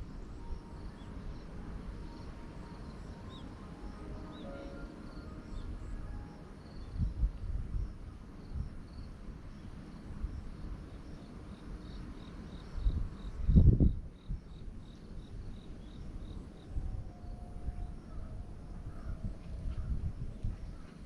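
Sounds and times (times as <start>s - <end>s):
low rumbling noise: 0.0s - 10.9s
insect chirping: 0.0s - 19.2s.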